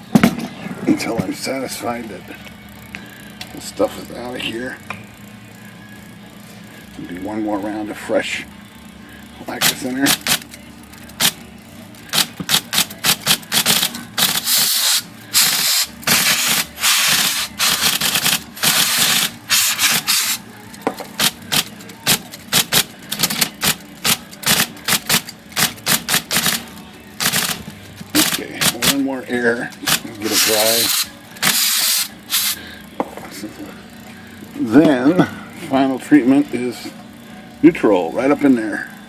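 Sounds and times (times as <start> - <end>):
typewriter motor hum: 9.2 - 32.8
aerosol spray hissing: 30.3 - 32.6.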